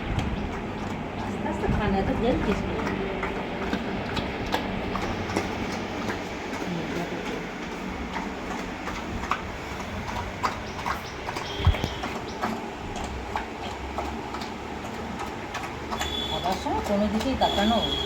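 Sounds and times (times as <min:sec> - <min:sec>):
dog chomping food: 0:00.0 - 0:18.0.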